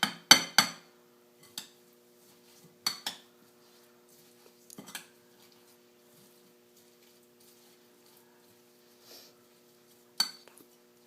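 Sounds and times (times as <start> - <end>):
spoon clinking against a bowl: 10.2 - 10.5.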